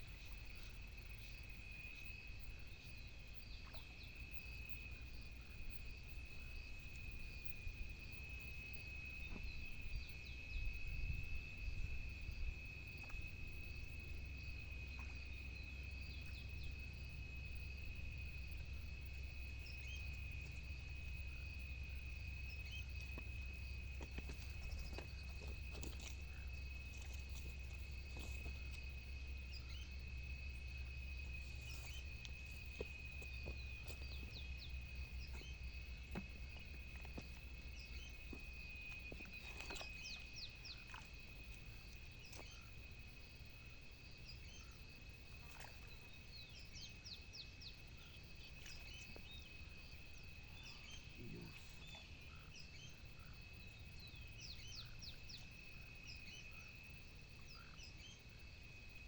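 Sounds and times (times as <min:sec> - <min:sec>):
high-pitched insect drone: 0:00.0 - 0:59.0
birds chirping: 0:18.4 - 0:42.8.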